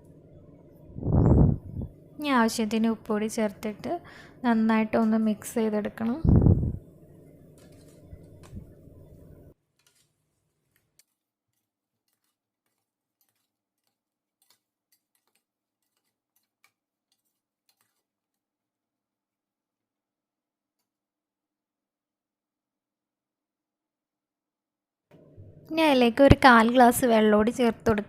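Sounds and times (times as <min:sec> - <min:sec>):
faint background hum: 0:00.0 - 0:13.5, 0:25.1 - 0:28.0.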